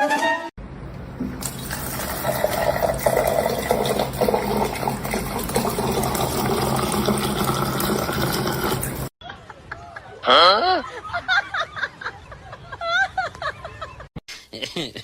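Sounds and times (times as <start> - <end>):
running water: 0.9 - 9.1.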